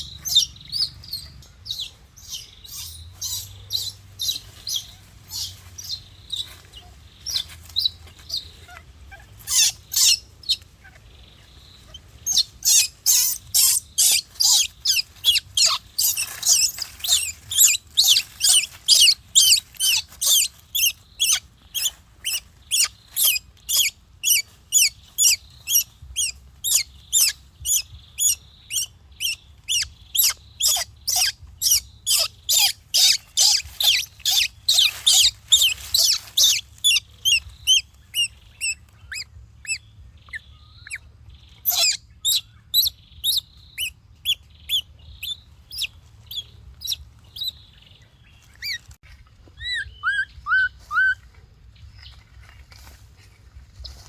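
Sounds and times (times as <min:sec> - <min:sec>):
baby monkey crying: 0:00.0 - 0:01.2, 0:08.3 - 0:10.8, 0:11.8 - 0:41.0, 0:41.6 - 0:47.5, 0:49.6 - 0:51.2.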